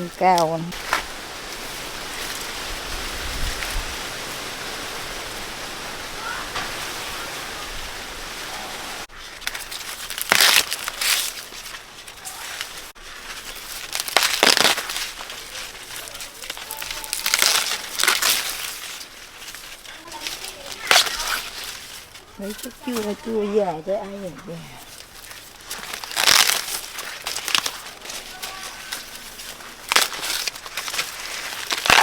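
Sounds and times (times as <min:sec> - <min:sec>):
dry cornstalks rustling and crackling: 0:00.0 - 0:32.0.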